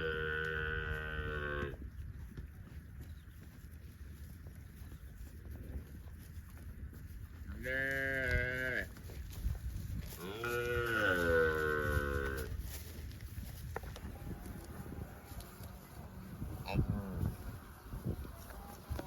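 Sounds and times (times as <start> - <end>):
cow mooing: 0.0 - 1.8, 10.2 - 12.5.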